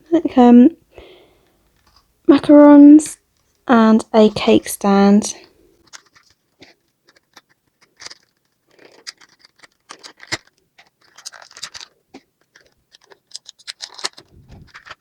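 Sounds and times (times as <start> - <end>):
cardboard and plastic rustling: 5.4 - 15.0
small packaging clicks: 5.8 - 15.0.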